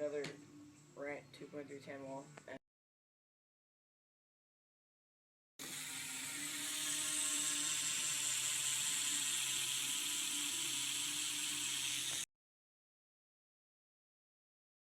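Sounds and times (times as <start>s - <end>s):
bicycle wheel spinning whir: 5.6s - 12.3s.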